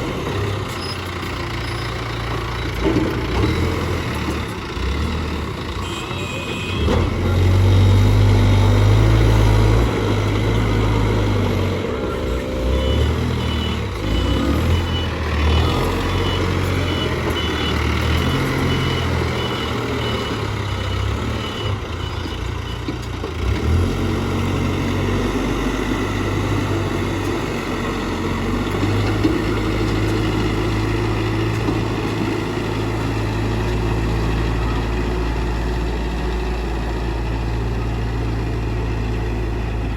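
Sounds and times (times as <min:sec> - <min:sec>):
diesel engine working under load: 0:00.0 - 0:39.9
reversing alarm beeping: 0:00.2 - 0:35.3.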